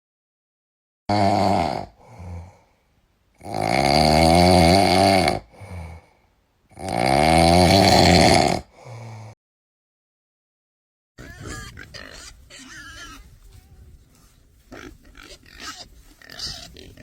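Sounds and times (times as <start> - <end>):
pig snoring: 1.1 - 2.6, 3.4 - 6.1, 6.7 - 8.7
soft breath: 2.0 - 3.0, 5.5 - 6.4, 8.7 - 9.4, 13.2 - 14.7.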